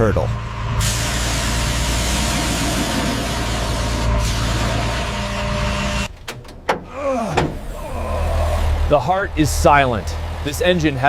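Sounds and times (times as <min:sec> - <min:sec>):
large vehicle engine running: 0:00.0 - 0:11.0
loud air hiss: 0:00.8 - 0:06.1.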